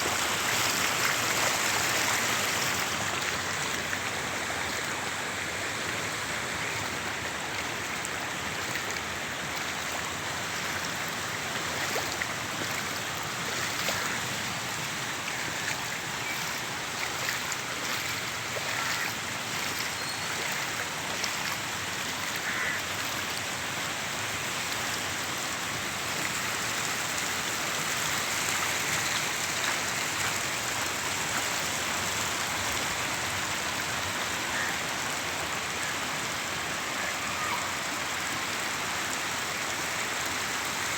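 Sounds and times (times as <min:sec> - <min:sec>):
water rushing: 0:00.0 - 0:40.9
small ticks and splashes: 0:06.6 - 0:24.0.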